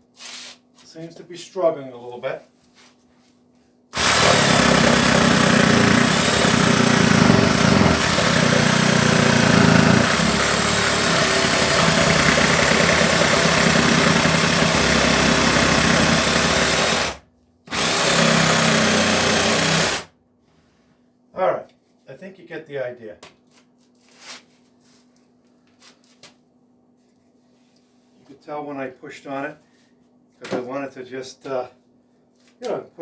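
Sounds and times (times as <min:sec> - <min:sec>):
reciprocating saw cutting plywood: 0:04.0 - 0:20.1.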